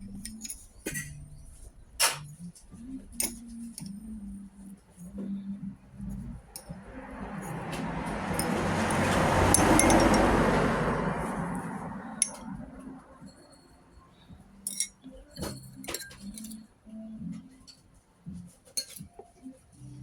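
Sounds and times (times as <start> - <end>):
dishes and cutlery clinking: 0.1 - 1.3, 3.1 - 3.9, 8.3 - 10.4, 12.2 - 12.6, 14.6 - 16.7, 18.5 - 19.4
vehicle passing: 5.1 - 13.4.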